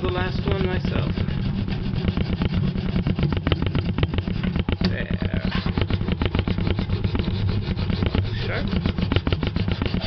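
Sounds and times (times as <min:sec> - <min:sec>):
small engine running: 0:00.0 - 0:10.0.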